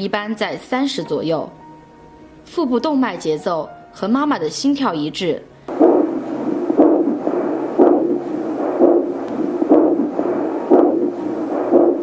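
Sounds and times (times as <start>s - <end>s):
whooshing doppler pulse beat: 5.7s - 12.0s.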